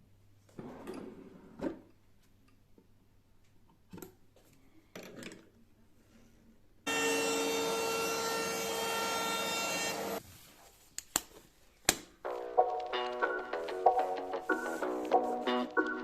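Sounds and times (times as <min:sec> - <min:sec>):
power tool working wood: 0:06.9 - 0:10.2.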